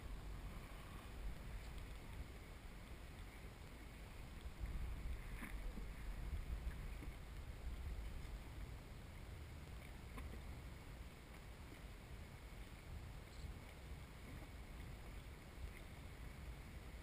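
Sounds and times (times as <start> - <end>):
jet ski engine rumble: 0.0 - 17.0
water noise: 0.0 - 17.0
wind: 0.0 - 17.0.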